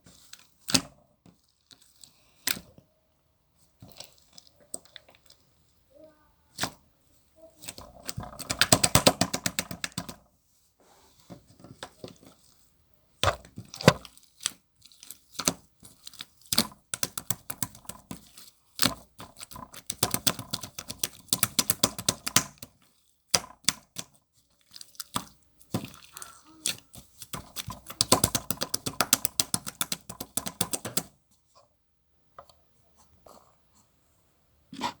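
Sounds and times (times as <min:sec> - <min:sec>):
slime crackling and popping: 0:13.3 - 0:31.0.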